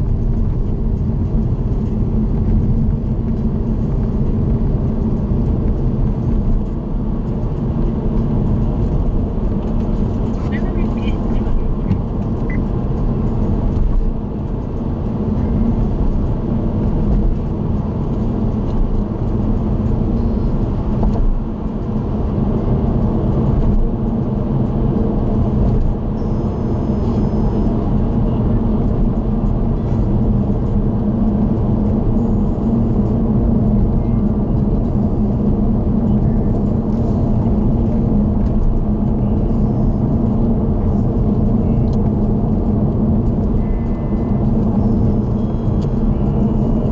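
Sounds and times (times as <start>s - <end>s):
car interior road rumble: 0.0s - 46.9s.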